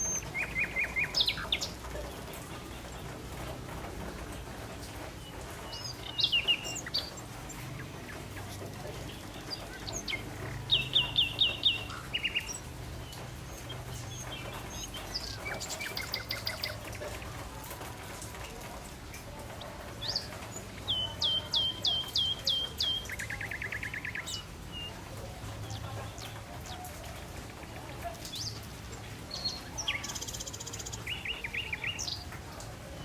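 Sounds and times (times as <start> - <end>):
birds chirping: 0.0 - 33.0.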